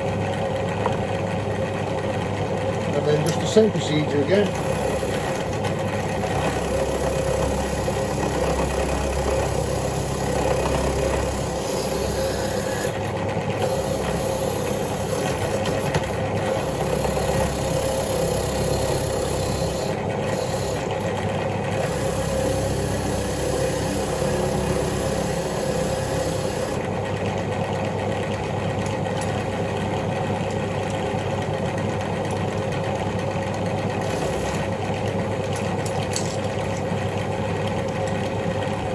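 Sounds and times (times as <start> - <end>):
power tool motor humming: 4.3 - 26.8, 34.0 - 34.9.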